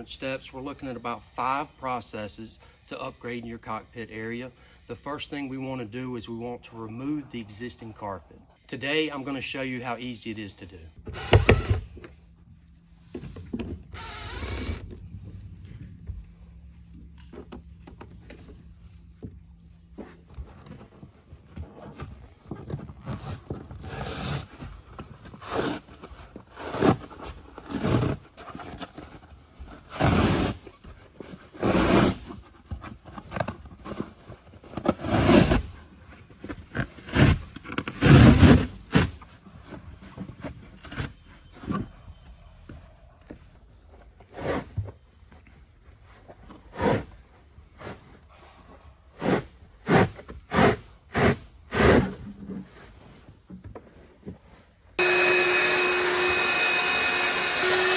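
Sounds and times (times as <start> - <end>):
carpet tearing and scraping: 20.6 - 41.8, 44.2 - 45.1, 46.4 - 48.2, 49.2 - 53.0.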